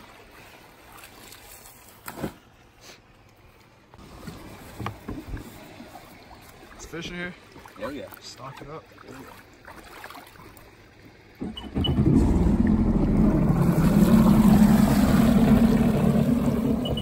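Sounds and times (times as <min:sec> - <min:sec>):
jet ski engine running: 0:11.4 - 0:17.0.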